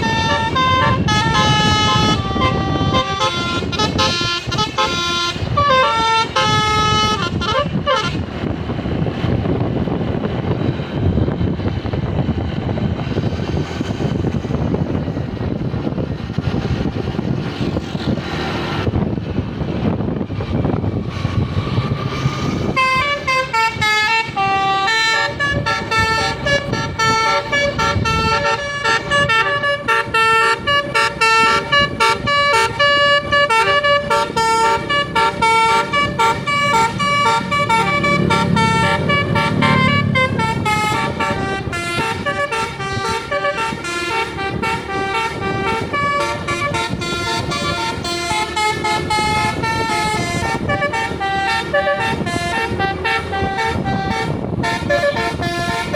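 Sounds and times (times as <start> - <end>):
musical air horn playing a tune: 0.0 - 8.4, 22.6 - 55.9.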